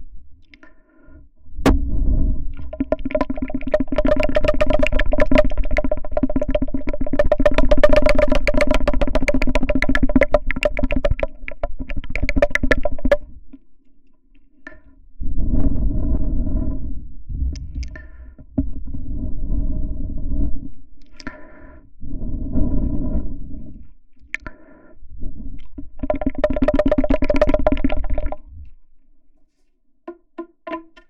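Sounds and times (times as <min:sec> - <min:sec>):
low hum: 0:01.5 - 0:13.4
rapid continuous clicking: 0:02.6 - 0:13.2, 0:26.0 - 0:28.4.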